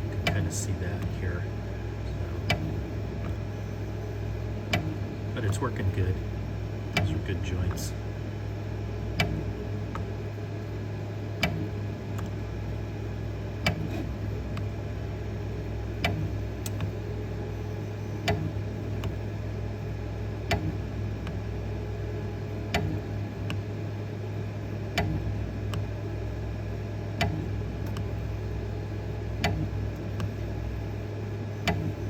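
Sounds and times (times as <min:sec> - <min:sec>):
low mechanical hum: 0:00.0 - 0:32.0
sharp machine clicks: 0:00.2 - 0:00.6, 0:06.9 - 0:07.8.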